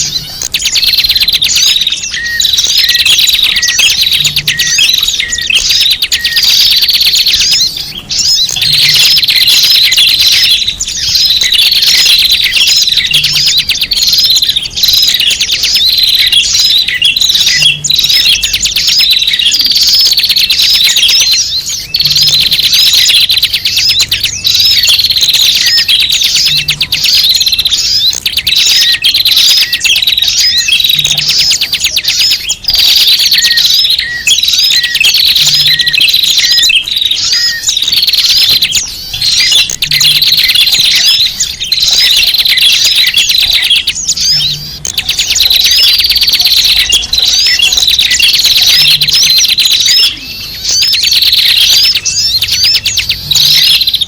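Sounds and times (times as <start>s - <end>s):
small birds chattering: 0.0s - 54.0s.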